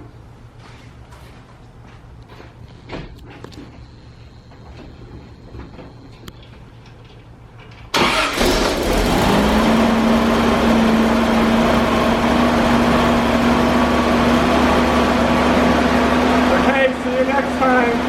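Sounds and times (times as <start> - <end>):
car engine starting and idling: 7.9 - 17.0.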